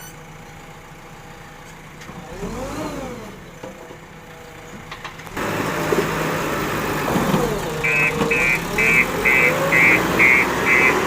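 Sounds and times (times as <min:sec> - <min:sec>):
diesel engine running and revving: 0:00.0 - 0:11.0.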